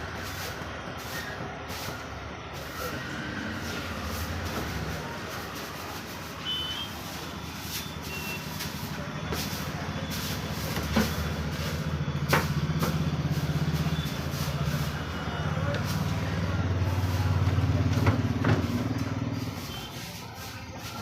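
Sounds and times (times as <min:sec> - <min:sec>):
vehicle engine low rumble: 0:08.5 - 0:20.9.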